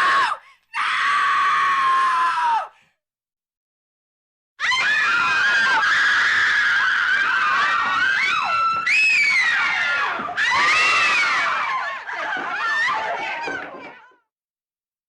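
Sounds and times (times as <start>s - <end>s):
high-pitched voices screaming: 4.6s - 14.0s.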